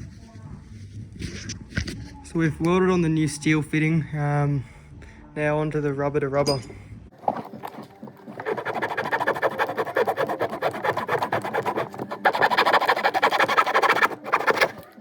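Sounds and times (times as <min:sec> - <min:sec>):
hand tool rasping strokes: 0:07.2 - 0:15.0.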